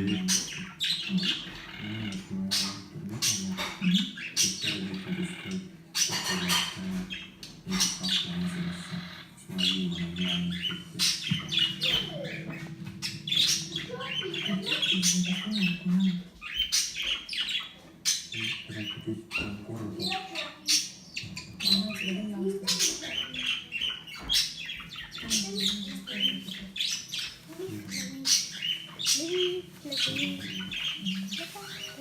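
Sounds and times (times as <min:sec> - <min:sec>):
cockatiel squawking and chirping: 0:10.0 - 0:32.0.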